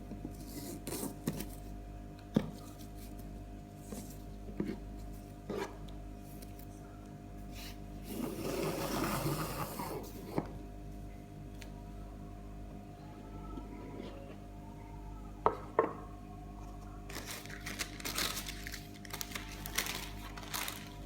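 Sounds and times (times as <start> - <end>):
steady low hum: 0.0 - 21.0
packaging rubbing and rustling: 17.1 - 21.0.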